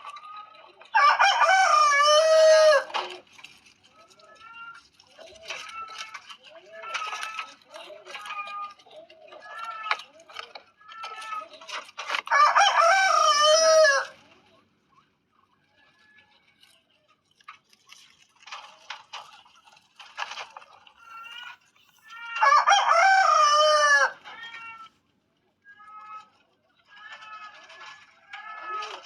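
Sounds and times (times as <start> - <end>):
rooster crowing: 1.0 - 2.9, 12.3 - 14.2, 22.2 - 24.3.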